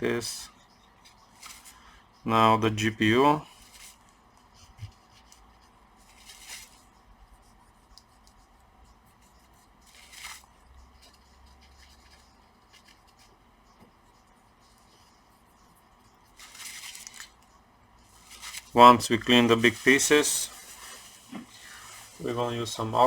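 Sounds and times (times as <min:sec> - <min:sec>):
cotton swab scratchy wiping: 0:03.5 - 0:17.5.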